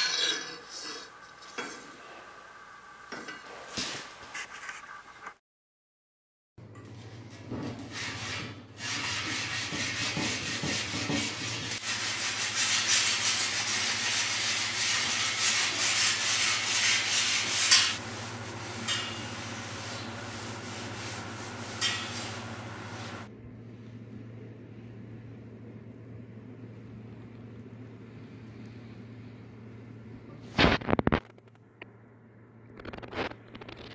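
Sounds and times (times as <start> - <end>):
abrasive rasping on steel blade: 21.7 - 22.3.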